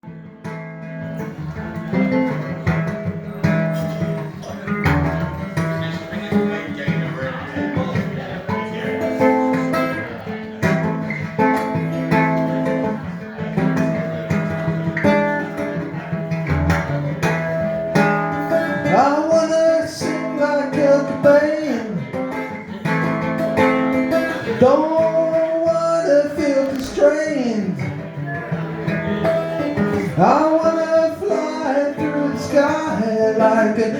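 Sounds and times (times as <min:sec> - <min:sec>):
acoustic guitar chords: 0:00.0 - 0:33.9
wordless singing: 0:24.4 - 0:28.2, 0:29.9 - 0:33.9.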